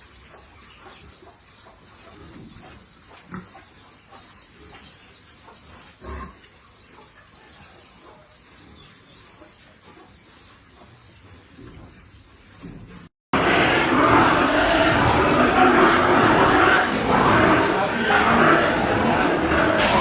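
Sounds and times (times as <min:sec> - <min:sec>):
pigs grunting: 0:00.3 - 0:06.5, 0:13.4 - 0:20.0.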